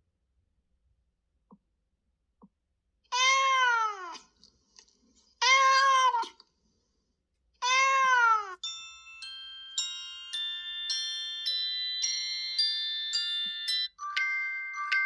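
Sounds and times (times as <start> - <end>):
cat meowing ringtone: 7.6 - 8.7, 13.3 - 15.0
chiming bell tone: 8.6 - 15.0.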